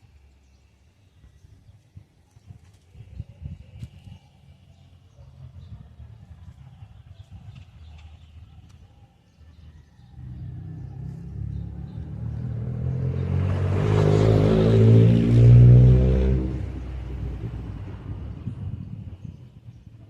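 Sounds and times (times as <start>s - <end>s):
vehicle engine passing by: 9.4s - 19.8s.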